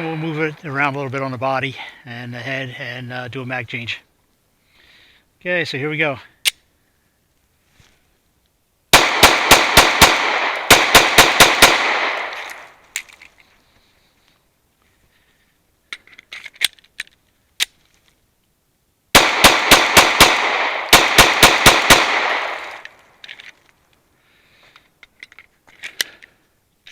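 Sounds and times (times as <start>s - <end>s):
pistol shots: 8.9s - 12.7s, 19.2s - 22.9s.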